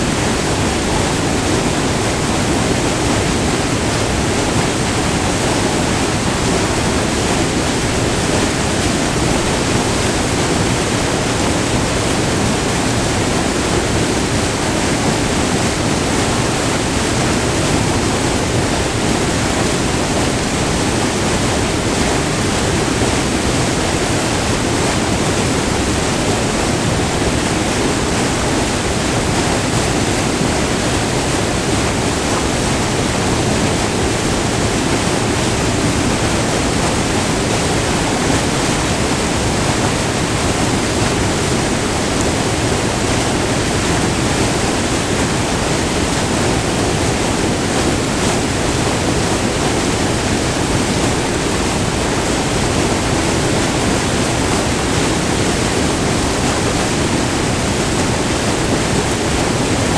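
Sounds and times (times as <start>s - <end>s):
waterfall roaring: 0.0s - 59.9s.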